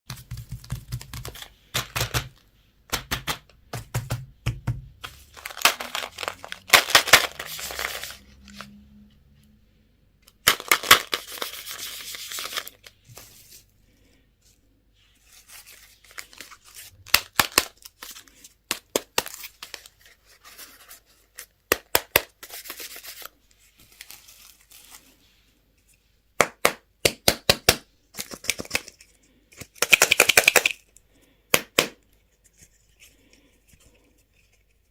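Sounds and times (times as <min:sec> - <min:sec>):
packaging rustling and tearing: 0:05.1 - 0:08.7.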